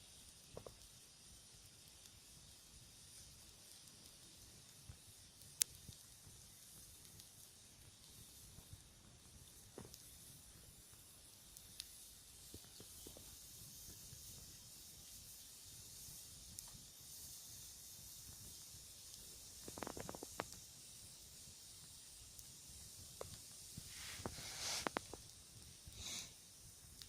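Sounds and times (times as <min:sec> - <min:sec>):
campfire crackles and pops: 0:00.0 - 0:27.0
campfire hissing: 0:00.0 - 0:27.0.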